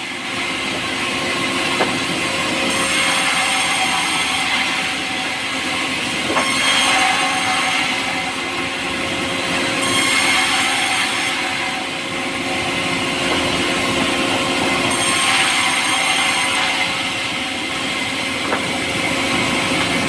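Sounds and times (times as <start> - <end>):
power saw cutting log: 0.0 - 20.0.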